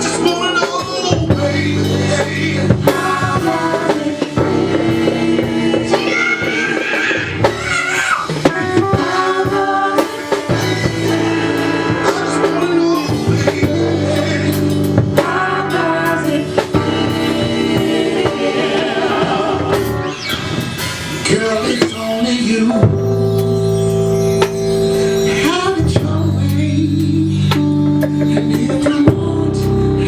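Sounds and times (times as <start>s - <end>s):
person singing: 0.0s - 20.1s, 24.9s - 30.0s
drum hits: 0.0s - 22.1s
live band playing: 0.0s - 30.0s.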